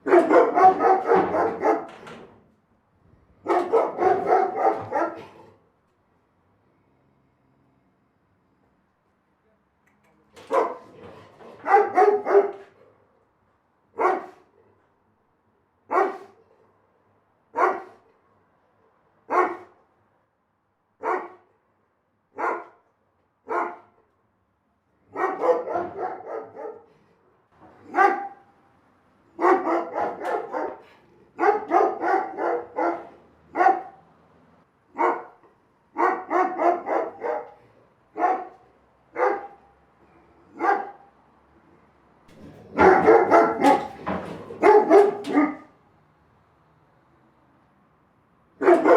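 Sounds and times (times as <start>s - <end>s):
big dog barking: 0.0s - 2.3s, 3.4s - 5.6s, 10.4s - 13.1s, 13.9s - 14.7s, 15.9s - 16.8s, 17.5s - 18.1s, 19.2s - 19.8s, 21.0s - 21.5s, 22.4s - 24.0s, 25.0s - 28.6s, 29.3s - 34.1s, 34.9s - 41.2s, 42.3s - 45.8s, 48.6s - 48.9s.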